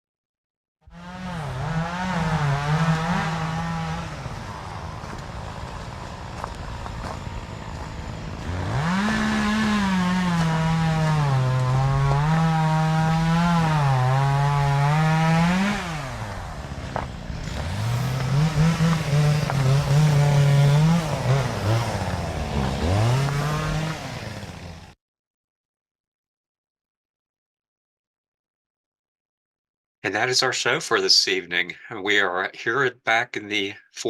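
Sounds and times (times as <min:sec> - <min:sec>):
motor engine revving: 0:00.9 - 0:25.0.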